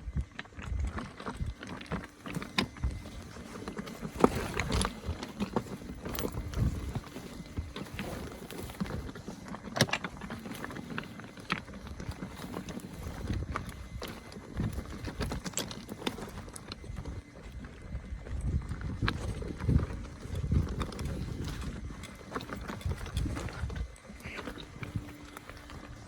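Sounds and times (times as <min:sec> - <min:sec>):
wheel clattering over rocks: 0:00.0 - 0:26.0.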